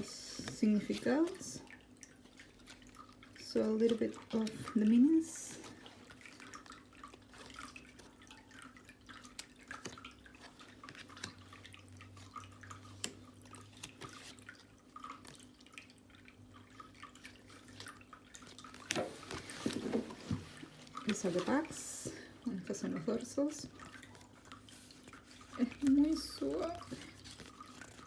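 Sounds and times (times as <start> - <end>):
low steady hum: 0.0 - 28.0
cards being handled: 24.0 - 28.0.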